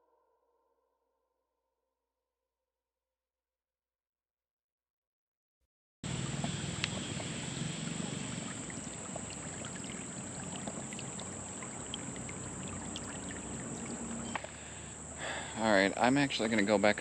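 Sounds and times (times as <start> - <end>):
creek water trickling over rocks: 6.0 - 17.0
high-pitched insect drone: 6.1 - 17.0.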